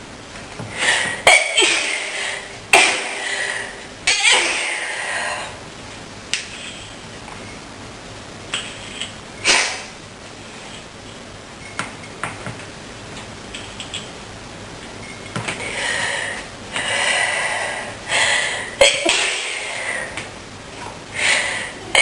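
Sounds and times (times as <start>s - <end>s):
person coughing: 1.1s - 3.2s, 4.1s - 4.9s, 18.8s - 19.6s.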